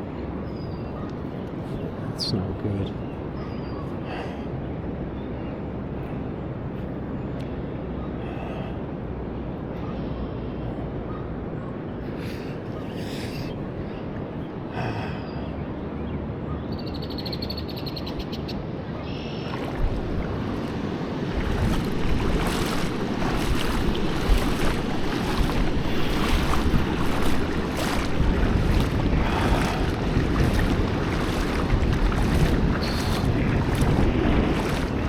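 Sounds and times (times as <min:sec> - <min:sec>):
flowing river water: 0:00.0 - 0:35.0
wind buffeting the microphone: 0:18.2 - 0:35.0.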